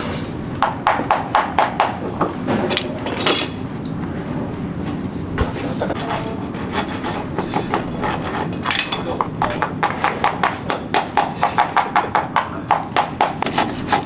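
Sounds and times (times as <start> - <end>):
shod hooves on hard ground: 9.2 - 14.0.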